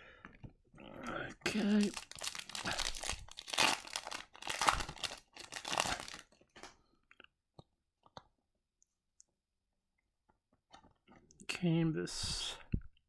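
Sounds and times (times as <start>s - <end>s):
foil wrapper tearing and crinkling: 1.5s - 6.4s.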